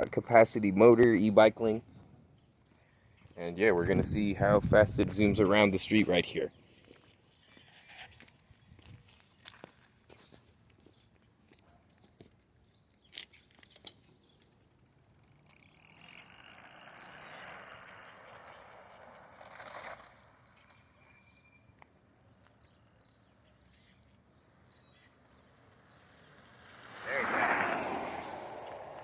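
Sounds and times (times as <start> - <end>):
electric bike motor and tyres passing: 14.2 - 21.8, 22.6 - 29.0.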